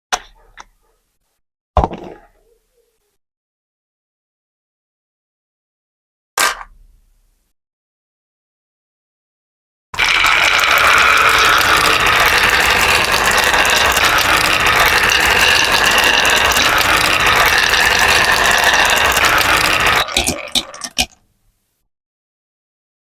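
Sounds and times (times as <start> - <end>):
marbles rolling and clattering: 10.0 - 21.1.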